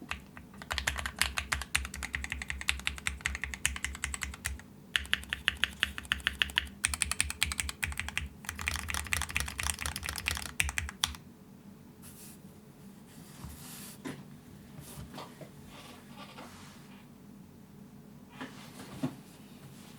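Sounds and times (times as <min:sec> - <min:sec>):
fast typing on keyboard: 0:00.0 - 0:11.2.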